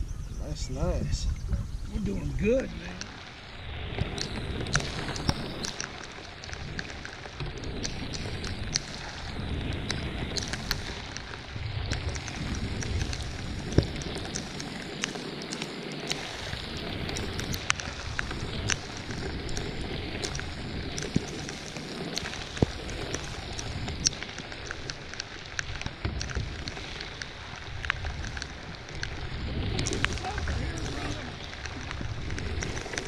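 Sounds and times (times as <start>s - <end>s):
raindrops ticking: 0.5s - 33.0s
heavy rain: 1.8s - 33.0s.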